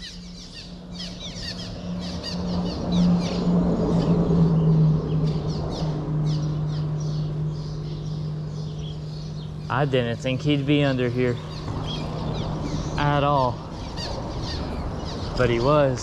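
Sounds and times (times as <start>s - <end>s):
small birds chirping: 0.0s - 16.0s
steady low hum: 0.0s - 16.0s.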